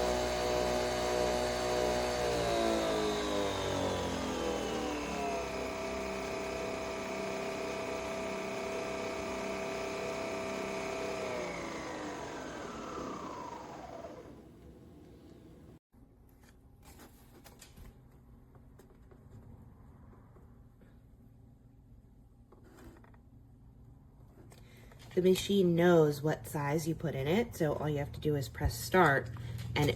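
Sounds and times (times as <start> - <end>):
coffee machine motor whine: 0.0 - 15.8.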